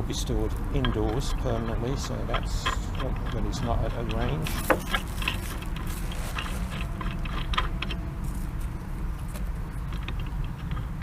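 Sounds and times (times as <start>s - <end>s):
steady low rumble: 0.0s - 11.0s
small metal parts clinking: 4.2s - 6.7s.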